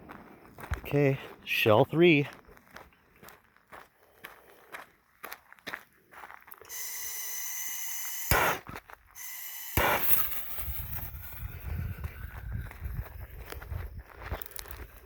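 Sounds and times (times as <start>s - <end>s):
firework blasts: 6.7s - 13.1s
firework fuse hissing: 6.7s - 13.2s.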